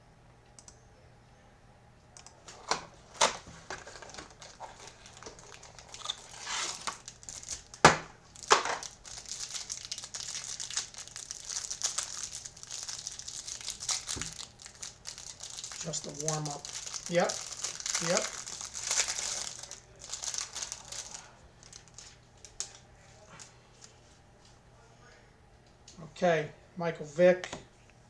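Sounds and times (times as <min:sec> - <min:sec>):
plastic wrapping crinkling: 0:02.4 - 0:22.8
packaging tearing: 0:02.5 - 0:22.8.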